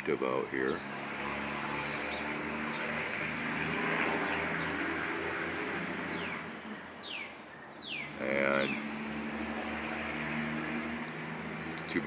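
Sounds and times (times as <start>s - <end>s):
passing engine hum: 0.0s - 12.0s
high bird chirps: 6.0s - 8.9s.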